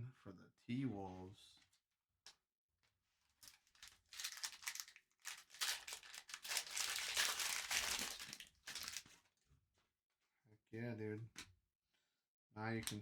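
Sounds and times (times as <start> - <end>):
foil wrapper tearing and crinkling: 3.4 - 9.2.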